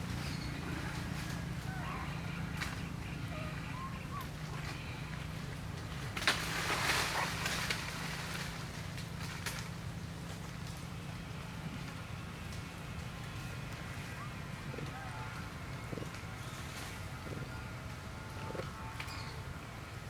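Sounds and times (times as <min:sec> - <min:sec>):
steady low hum: 0:00.0 - 0:20.0
faint chirping calls: 0:00.1 - 0:05.3.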